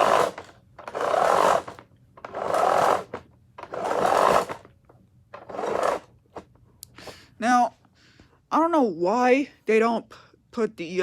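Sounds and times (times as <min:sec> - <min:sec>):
vacuum power cord being pulled out: 0:00.0 - 0:04.7, 0:05.3 - 0:06.5.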